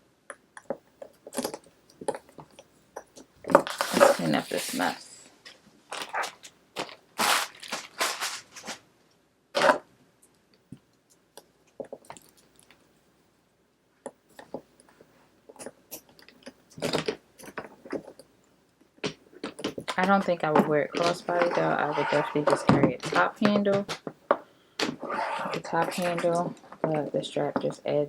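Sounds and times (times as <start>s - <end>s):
paper crinkling: 3.6s - 5.2s, 5.9s - 8.8s.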